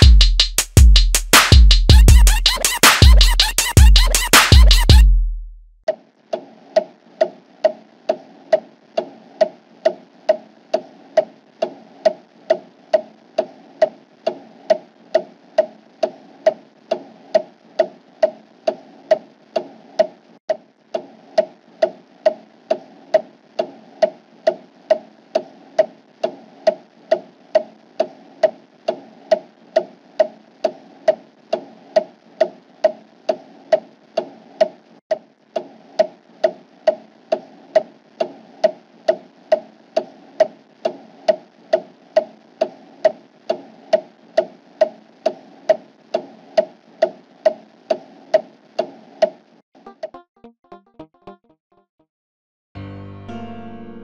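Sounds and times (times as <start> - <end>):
clock ticking: 0.0 - 5.1, 5.9 - 50.2
electronic music: 0.0 - 5.4, 52.8 - 54.0.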